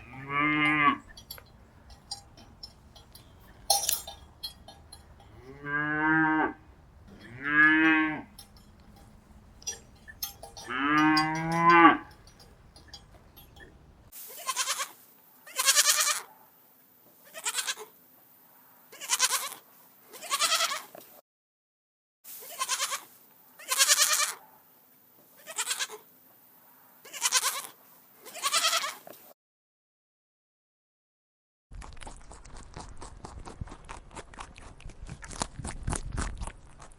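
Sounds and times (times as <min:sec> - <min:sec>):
livestock bleating: 0:00.0 - 0:13.8, 0:14.4 - 0:16.3, 0:17.2 - 0:17.9, 0:18.9 - 0:20.9, 0:22.4 - 0:24.4, 0:25.4 - 0:26.0, 0:27.0 - 0:29.1.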